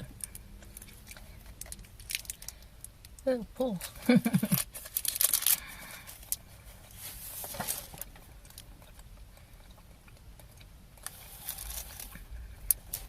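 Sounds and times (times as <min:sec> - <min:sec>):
person chewing toffee: 0:08.4 - 0:12.8.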